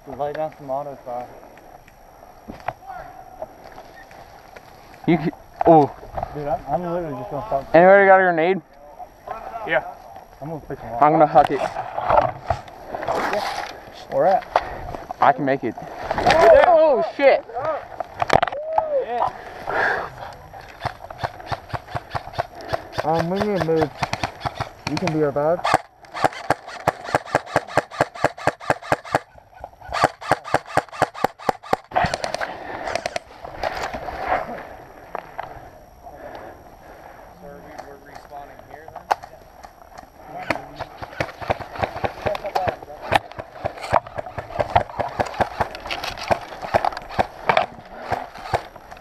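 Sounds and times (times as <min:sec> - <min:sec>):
airsoft gun firing: 0:20.8 - 0:29.3, 0:29.9 - 0:32.4, 0:40.7 - 0:45.7.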